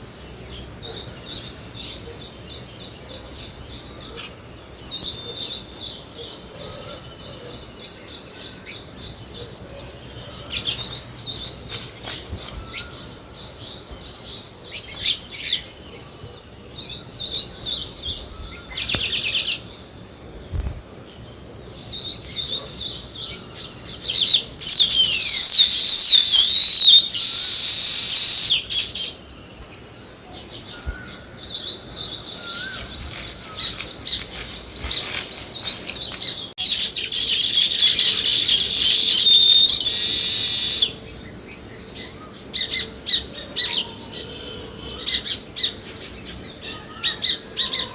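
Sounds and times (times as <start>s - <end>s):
small birds chirping: 0.0s - 47.9s
bird harsh hissing buzz: 24.7s - 28.7s.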